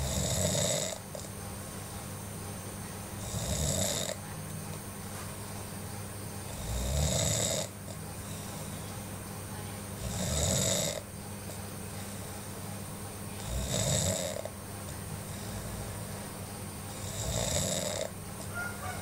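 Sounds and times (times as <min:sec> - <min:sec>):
person snoring: 0:00.0 - 0:01.3, 0:03.2 - 0:04.2, 0:06.5 - 0:07.7, 0:10.0 - 0:11.0, 0:13.4 - 0:14.5, 0:16.9 - 0:18.1
steady low hum: 0:00.0 - 0:19.0.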